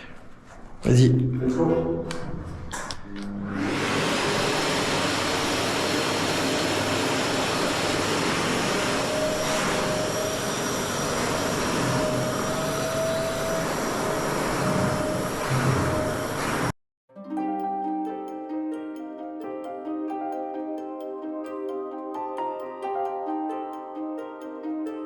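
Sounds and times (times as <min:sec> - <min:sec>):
vacuum cleaner running: 0:03.4 - 0:16.8.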